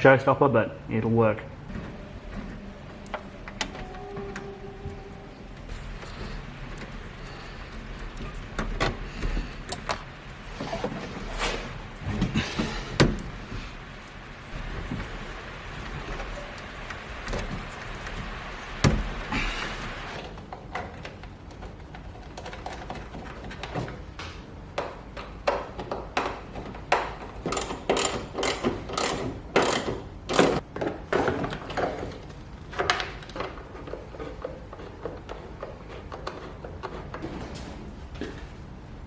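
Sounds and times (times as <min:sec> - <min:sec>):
steady hiss: 0:01.7 - 0:20.4
hand tools and metal parts clicking: 0:25.5 - 0:30.6.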